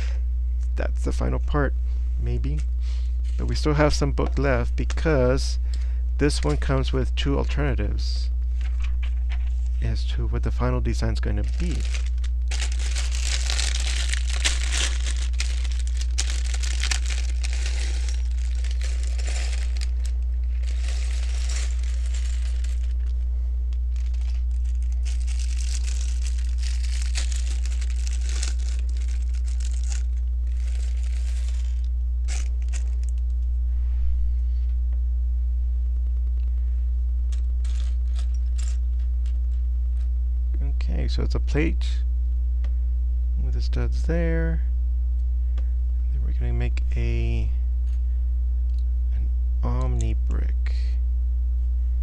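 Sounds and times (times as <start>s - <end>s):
low electrical hum: 0.0s - 52.0s
hands rustling and crinkling: 11.0s - 33.4s, 37.3s - 40.1s.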